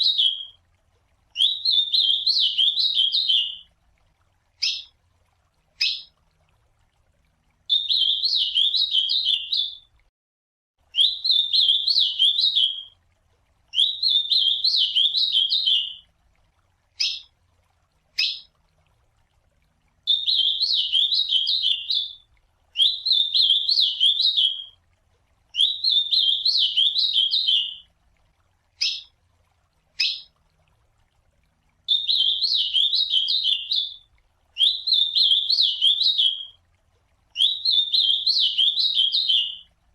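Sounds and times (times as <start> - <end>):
bird singing warbled phrase: 1.4 - 3.6, 5.8 - 6.1, 7.7 - 9.9, 11.0 - 12.9, 13.8 - 16.0, 18.2 - 18.5, 20.1 - 22.2, 25.6 - 27.8, 28.8 - 29.1, 30.0 - 30.3, 31.9 - 34.0, 34.6 - 36.5, 37.4 - 39.7.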